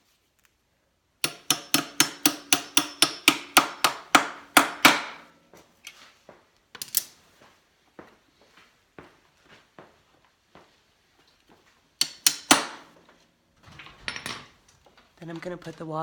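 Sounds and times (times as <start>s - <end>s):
hammer striking metal pin: 1.2s - 5.4s, 12.0s - 12.9s.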